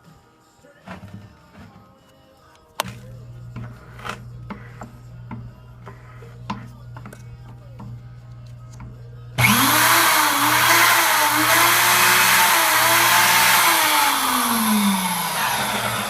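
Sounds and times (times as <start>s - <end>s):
magnetic drill boring steel: 8.8s - 16.0s.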